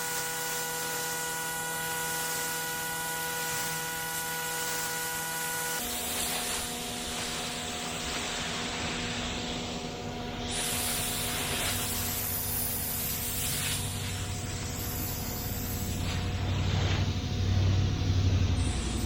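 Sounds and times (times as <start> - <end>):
pressure washer jet hissing: 0.0 - 19.0
pressure washer motor tone: 0.0 - 19.0.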